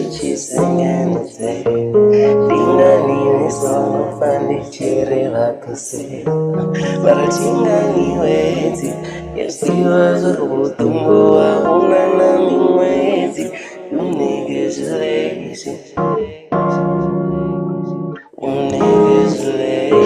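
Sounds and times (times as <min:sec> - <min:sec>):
person singing: 0:00.0 - 0:20.0
electric keyboard chords: 0:16.0 - 0:20.0.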